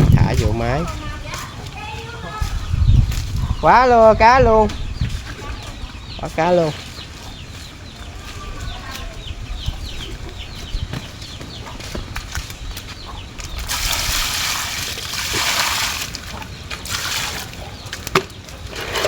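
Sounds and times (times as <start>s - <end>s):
small bird chirping: 0.0s - 14.2s
water splashing: 13.4s - 19.0s.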